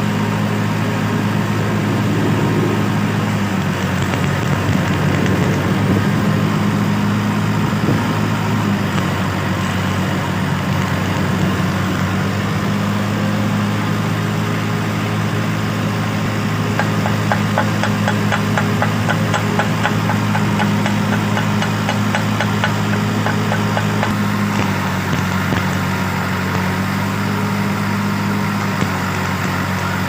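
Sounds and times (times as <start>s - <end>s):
welding machine hum: 13.8s - 30.0s.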